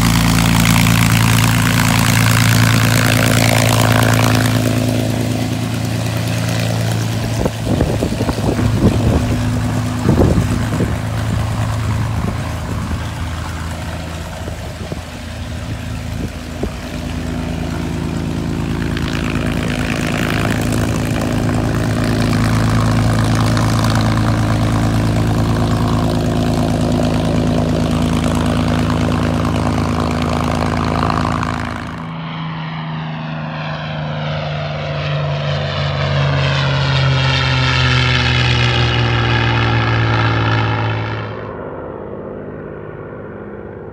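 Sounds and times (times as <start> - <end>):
propeller airplane engine: 0.0 - 43.9
sweeping phasing drone: 0.0 - 43.9.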